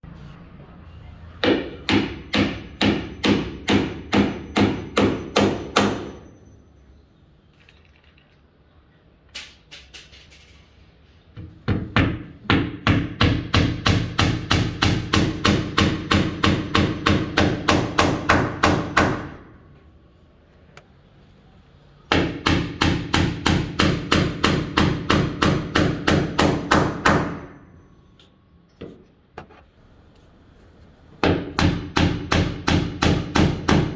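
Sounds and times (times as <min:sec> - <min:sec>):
hammer driving nails into wood: 0:31.2 - 0:33.9.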